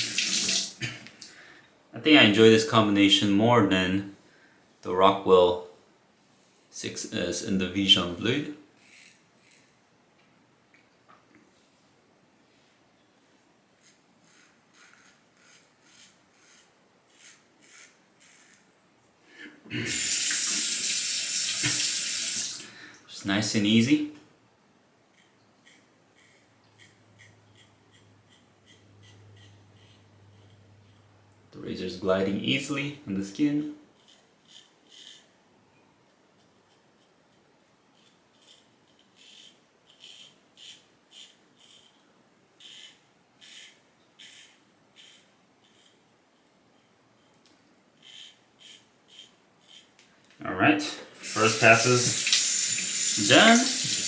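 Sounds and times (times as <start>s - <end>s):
razor scraping stubble: 8.8s - 9.8s, 13.8s - 18.7s, 19.9s - 22.6s, 25.1s - 31.1s, 31.7s - 35.4s, 42.6s - 50.0s, 51.2s - 54.0s
tap running into sink: 52.0s - 54.0s.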